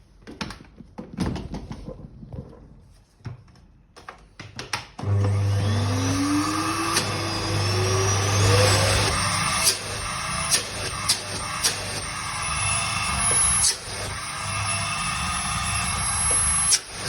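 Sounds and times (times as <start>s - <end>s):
vacuum cleaner motor whine: 5.0s - 17.0s.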